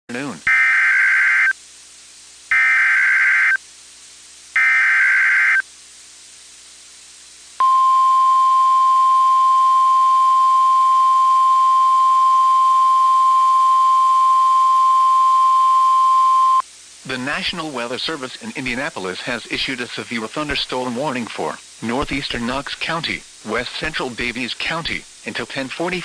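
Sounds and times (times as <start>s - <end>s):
screeching data bursts: 0.5s - 1.6s, 2.5s - 3.6s, 4.6s - 5.6s
steady single-pitch alert tone: 7.6s - 16.6s.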